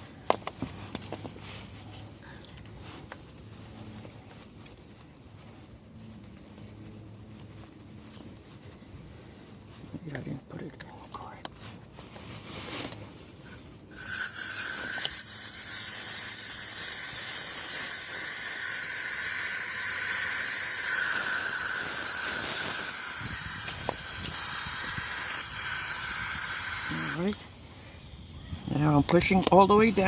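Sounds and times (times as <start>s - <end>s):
aerosol can hissing: 13.9s - 27.4s.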